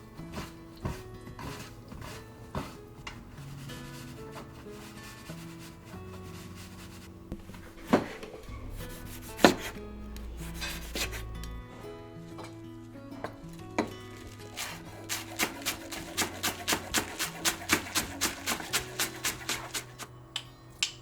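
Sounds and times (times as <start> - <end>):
soft background music: 0.0 - 21.0
utensil scraping: 0.2 - 12.4, 13.5 - 20.1.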